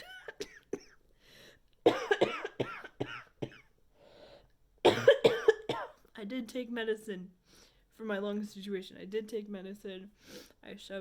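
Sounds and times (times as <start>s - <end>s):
woman coughing: 0.0s - 1.0s, 1.8s - 3.7s, 4.8s - 6.0s.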